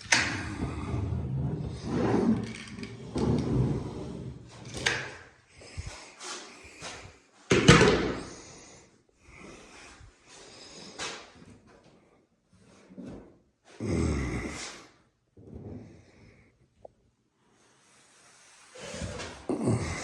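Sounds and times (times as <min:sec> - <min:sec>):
objects knocking and rubbing: 0:00.0 - 0:05.2.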